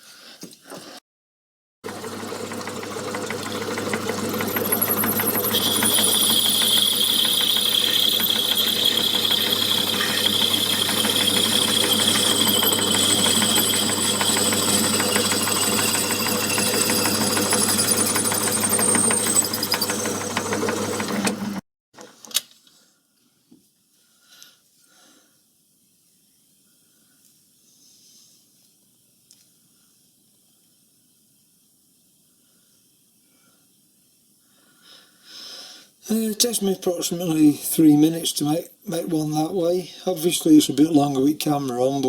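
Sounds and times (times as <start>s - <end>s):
cutting tool whine: 1.9s - 21.6s
lathe motor hum: 1.9s - 21.6s.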